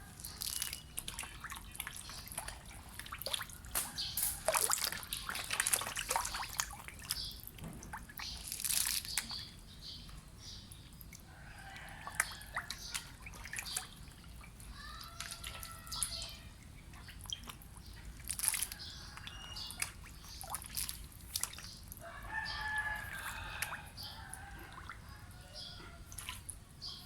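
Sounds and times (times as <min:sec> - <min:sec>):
water drips: 0:00.1 - 0:27.0
catfish splashing at water surface: 0:00.2 - 0:09.4, 0:11.6 - 0:25.1.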